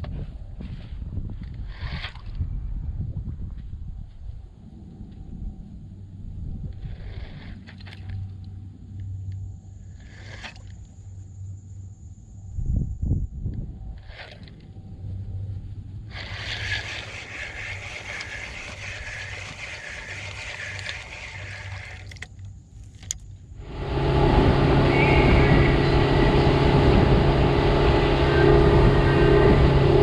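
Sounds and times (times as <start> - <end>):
motor running loudly: 16.1 - 22.3, 23.0 - 30.0.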